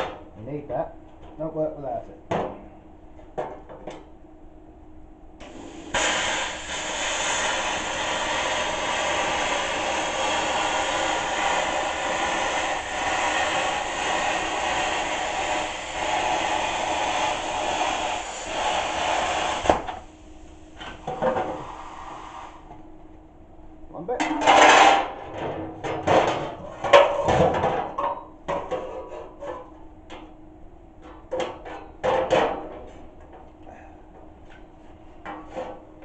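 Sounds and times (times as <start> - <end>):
plasma cutter hissing: 5.4 - 20.0.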